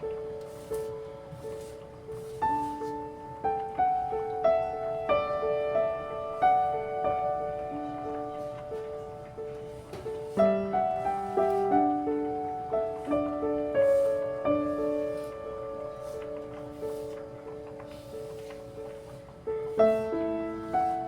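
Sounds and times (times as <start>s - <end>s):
slow gentle piano music: 0.0s - 21.0s.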